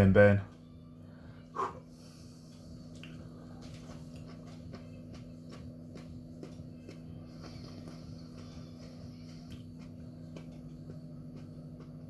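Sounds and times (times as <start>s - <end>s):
low electrical hum: 0.0s - 12.0s
wet chewing: 2.9s - 12.0s.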